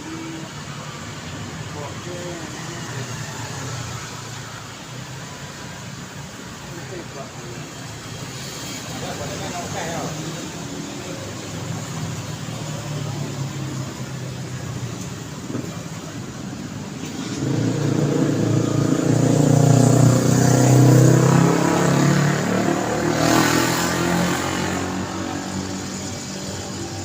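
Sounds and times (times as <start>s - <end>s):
city street traffic: 0.0s - 27.0s
vehicle engine passing close: 8.8s - 27.0s.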